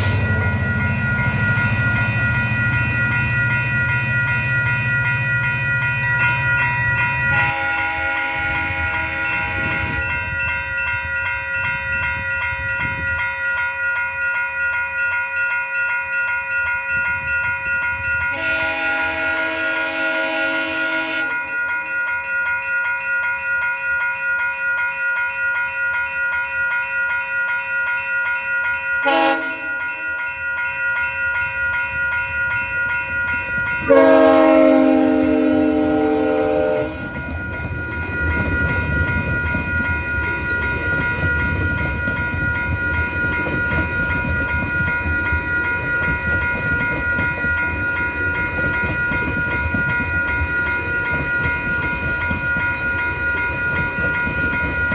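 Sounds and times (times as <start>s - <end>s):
train passing rush: 0.0s - 23.4s, 27.5s - 54.9s
crossing warning bell ringing: 0.0s - 54.9s
locomotive horn blasts: 7.3s - 10.0s, 18.3s - 21.5s, 29.0s - 29.8s, 33.8s - 37.2s.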